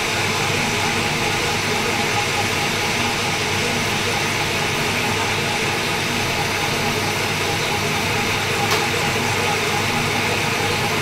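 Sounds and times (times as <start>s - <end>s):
lathe running with hum and hiss: 0.0s - 11.0s.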